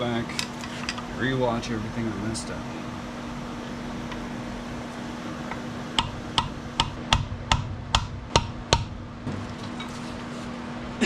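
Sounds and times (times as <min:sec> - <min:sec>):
hammer striking chisel: 0:06.0 - 0:08.9.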